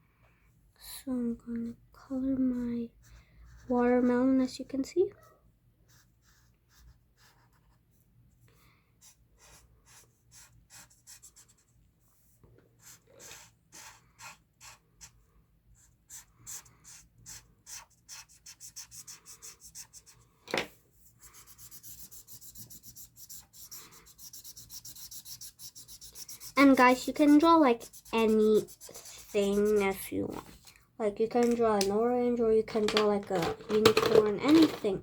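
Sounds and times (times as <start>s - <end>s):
marker scribbling on paper: 9.0s - 11.7s, 12.8s - 15.2s, 15.8s - 20.2s, 21.0s - 30.5s.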